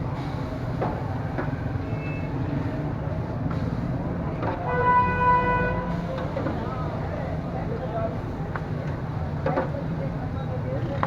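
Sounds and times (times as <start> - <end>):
street traffic rumble: 0.0 - 11.0
vehicle horn: 4.7 - 5.9.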